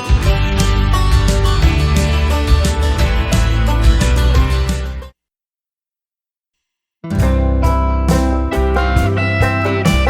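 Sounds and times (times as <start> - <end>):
country tune on acoustic guitar: 0.0 - 5.0, 7.1 - 10.0.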